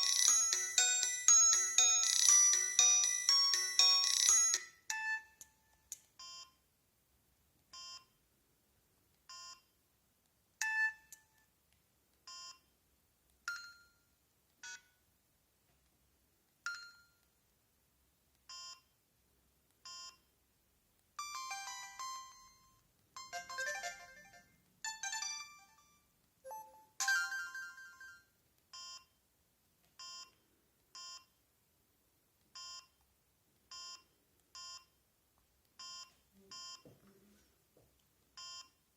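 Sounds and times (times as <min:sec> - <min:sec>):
phone ringtone melodies: 0:00.0 - 0:05.6, 0:21.2 - 0:28.3.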